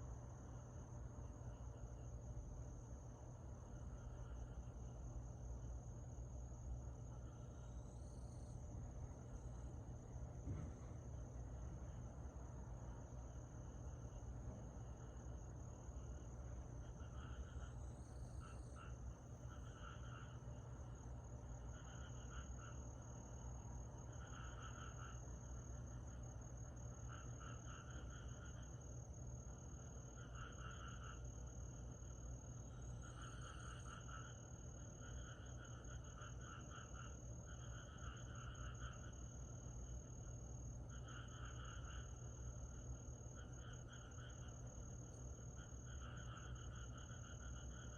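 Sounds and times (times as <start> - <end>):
high steady insect trill: 0.0 - 47.9
steady low hum: 0.0 - 47.9
pulsing buzzy insect call: 24.0 - 47.9.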